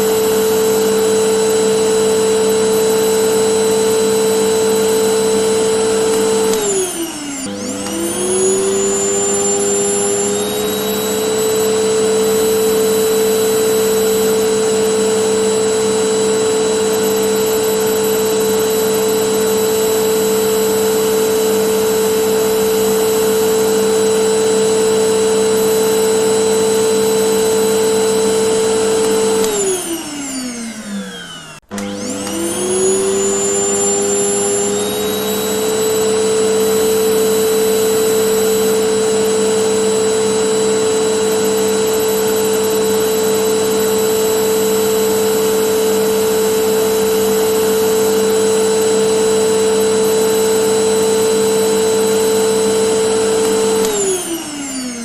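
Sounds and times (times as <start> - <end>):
vacuum cleaner motor whining: 0.0 - 55.0.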